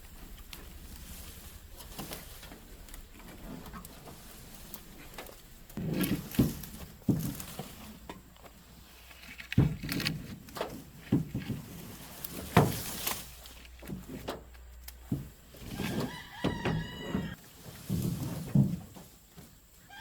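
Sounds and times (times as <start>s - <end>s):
knocks and thumps: 5.8s - 8.2s, 9.5s - 12.9s
rooster crowing: 15.7s - 17.4s.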